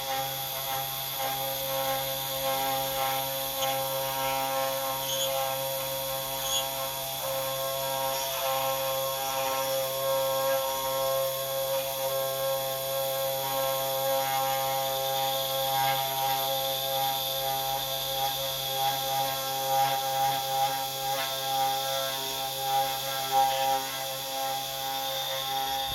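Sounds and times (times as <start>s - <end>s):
router motor whine: 0.0s - 25.9s
machine squeaks and clicks: 4.9s - 6.9s.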